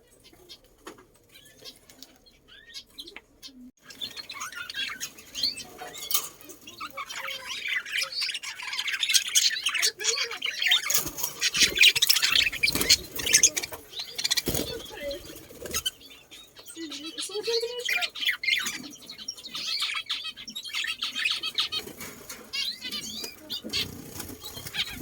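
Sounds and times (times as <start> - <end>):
birds chirping and squawking: 0.0 - 25.0.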